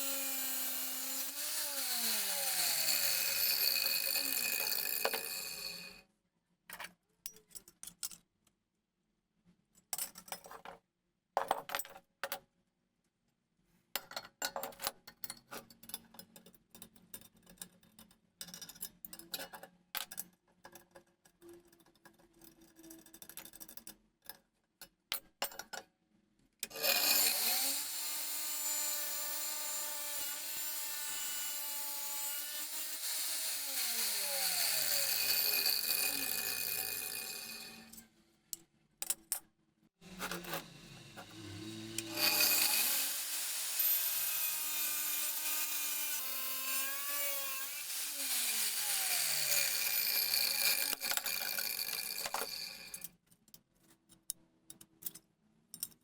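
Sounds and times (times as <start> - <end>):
angle grinder whining: 0.0 - 6.0, 26.7 - 38.0, 40.1 - 53.0.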